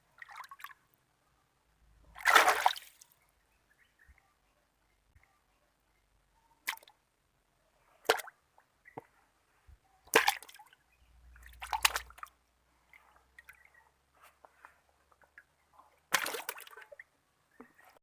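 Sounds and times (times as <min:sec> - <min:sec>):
water splashing and sloshing: 0:00.2 - 0:00.8, 0:02.1 - 0:03.1, 0:10.1 - 0:13.8, 0:16.0 - 0:18.0.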